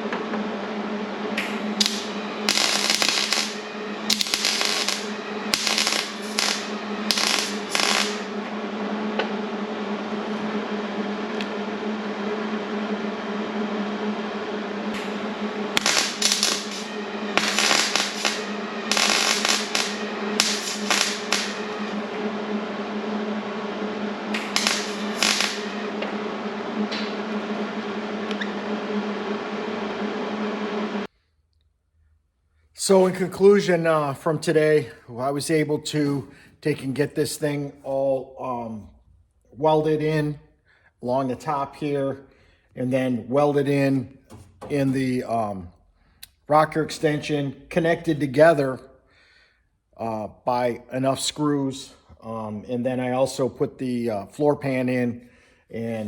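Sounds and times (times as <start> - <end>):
welding arc crackling: 0.0 - 10.4, 14.9 - 31.1
steady hum: 0.0 - 31.1.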